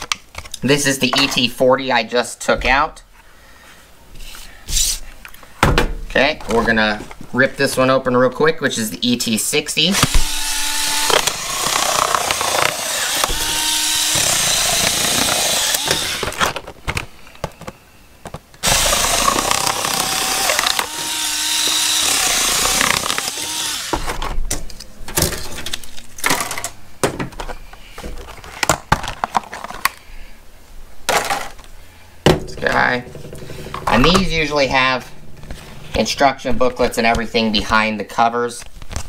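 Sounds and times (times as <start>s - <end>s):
packaging tearing and crinkling: 10.0s - 17.1s.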